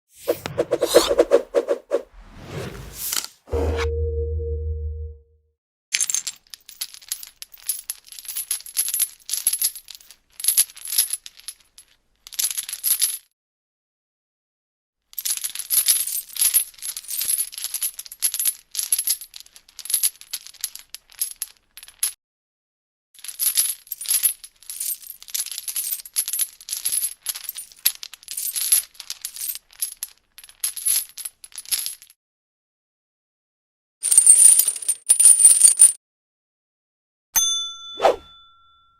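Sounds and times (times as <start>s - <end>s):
metal chain rattling: 34.1s - 36.0s.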